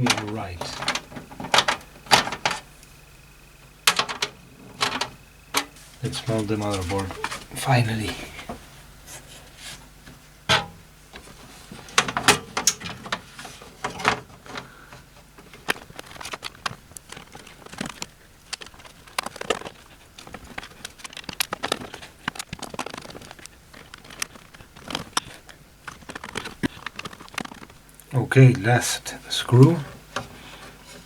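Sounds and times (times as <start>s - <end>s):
screws rattling against metal case: 15.5s - 27.9s.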